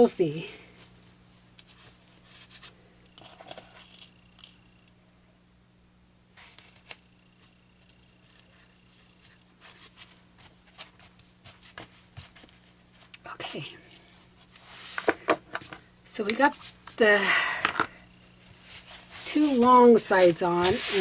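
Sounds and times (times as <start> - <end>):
steady low hum: 0.0 - 21.0
fabric rustling: 18.6 - 21.0.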